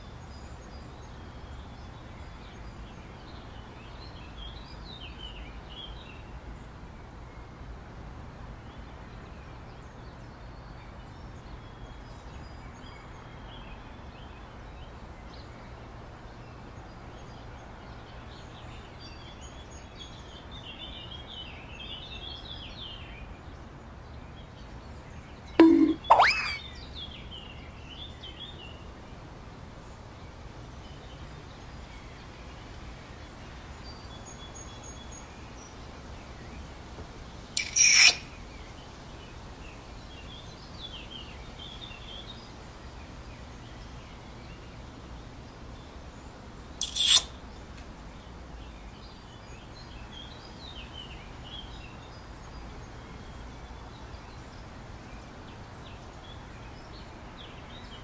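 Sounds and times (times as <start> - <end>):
faint birdsong: 0.0 - 58.0
background hiss: 44.8 - 48.3.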